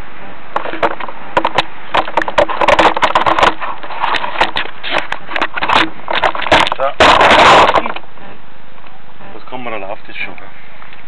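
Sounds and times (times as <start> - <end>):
rough rattling noise: 0.0 - 8.2
sharp clicks and knocks: 0.5 - 8.1.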